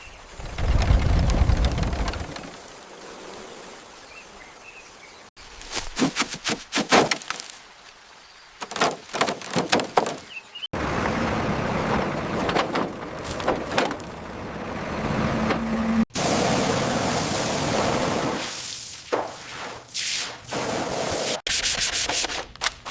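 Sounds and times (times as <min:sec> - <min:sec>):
sharp scraping or knocking strokes: 0:05.6 - 0:07.5.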